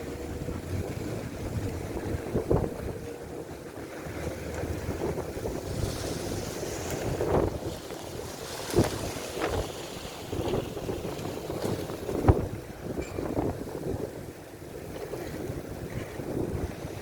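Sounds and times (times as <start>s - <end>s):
wind rumbling on microphone: 0.0s - 17.0s.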